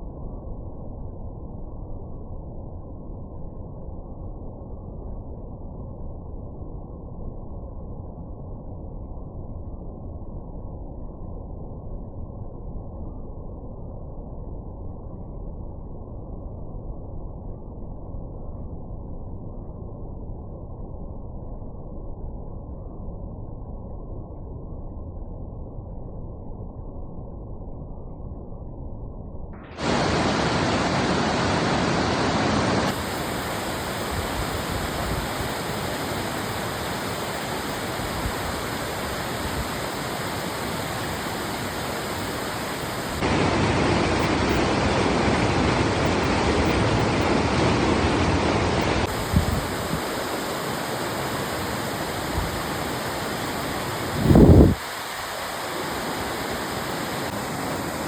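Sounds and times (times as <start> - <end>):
river water rushing: 29.7 - 58.0.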